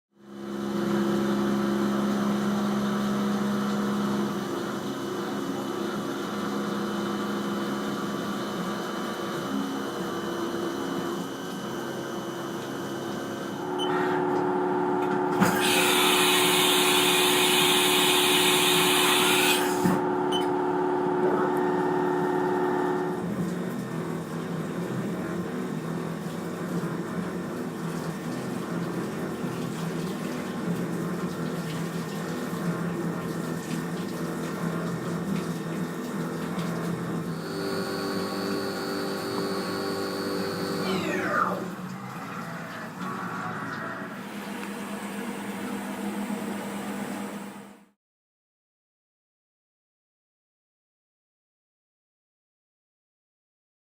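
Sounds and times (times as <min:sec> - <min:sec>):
milling machine whine: 0:00.2 - 0:47.9.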